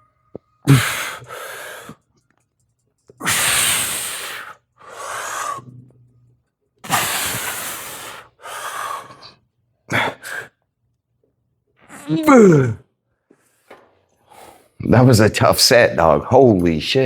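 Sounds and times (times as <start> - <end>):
man breathing hard: 0.6 - 2.1, 3.2 - 5.8, 6.8 - 10.6.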